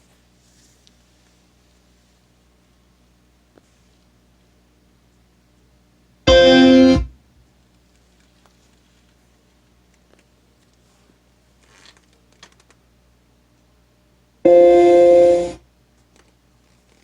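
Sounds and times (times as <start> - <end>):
short electronic chord: 6.3 - 7.1, 14.5 - 15.6.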